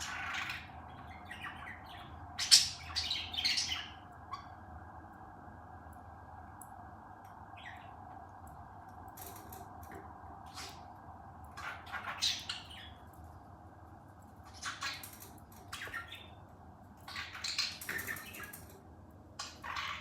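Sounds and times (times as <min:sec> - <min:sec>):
parrot squawking and chirping: 0:00.0 - 0:04.6, 0:11.5 - 0:13.0, 0:14.4 - 0:16.4, 0:17.0 - 0:18.6, 0:19.4 - 0:20.0.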